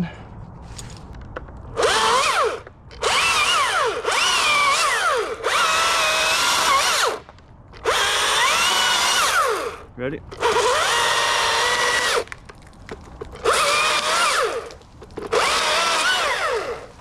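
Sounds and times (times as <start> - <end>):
small power tool motor: 1.8 - 7.2, 7.8 - 12.3, 13.4 - 16.9.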